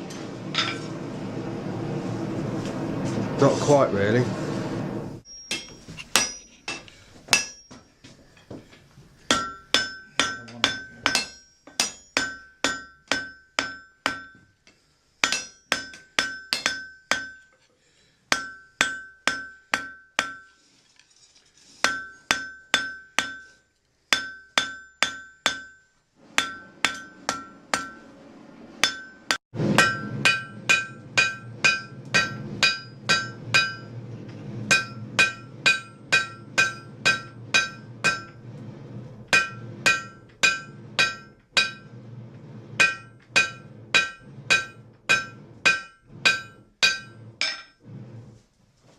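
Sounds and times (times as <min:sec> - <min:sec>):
low rushing sound: 0:00.0 - 0:05.2
hammer striking anvil: 0:05.3 - 0:07.8, 0:09.3 - 0:14.4, 0:15.2 - 0:17.4, 0:18.3 - 0:20.5, 0:21.8 - 0:23.5, 0:24.1 - 0:25.8, 0:26.4 - 0:28.0, 0:28.8 - 0:33.9, 0:34.7 - 0:38.4, 0:39.3 - 0:41.8, 0:42.8 - 0:47.7.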